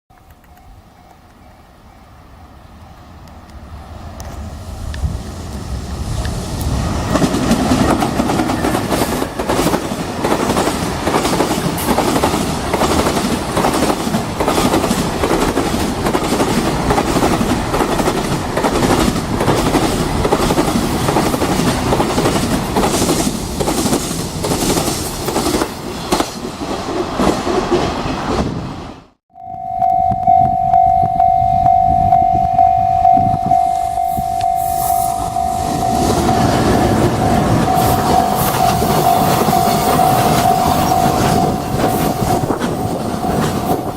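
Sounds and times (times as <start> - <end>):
freight train rumbling: 0.6 - 29.2, 30.3 - 43.9
steady high tone: 29.3 - 43.9.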